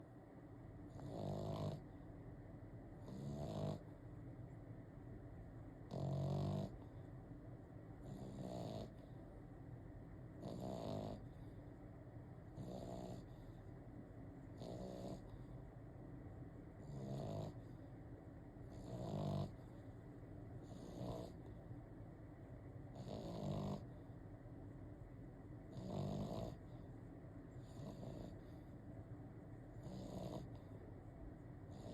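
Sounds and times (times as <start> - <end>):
dog snoring: 0.9 - 2.0, 3.0 - 4.0, 5.8 - 7.1, 8.0 - 9.2, 10.4 - 11.6, 12.5 - 13.7, 14.5 - 15.6, 16.8 - 17.9, 18.6 - 19.9, 20.6 - 21.6, 22.9 - 24.1, 25.6 - 26.9, 27.5 - 28.8, 29.7 - 30.8, 31.7 - 31.9.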